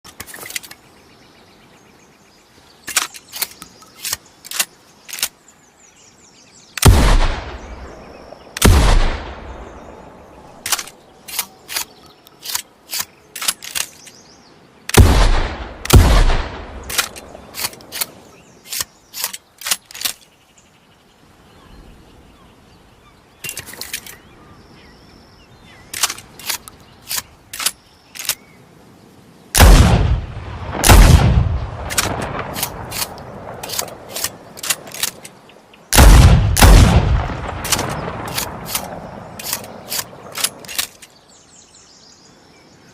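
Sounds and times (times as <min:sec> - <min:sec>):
metallic clicks of shotgun action: 0:02.9 - 0:05.4, 0:10.6 - 0:14.2, 0:15.9 - 0:20.2, 0:25.9 - 0:28.4, 0:31.8 - 0:35.4, 0:37.6 - 0:41.2
loud shotgun shots with echo: 0:06.8 - 0:07.8, 0:08.6 - 0:09.5, 0:15.0 - 0:17.0, 0:29.6 - 0:33.1, 0:36.0 - 0:39.6.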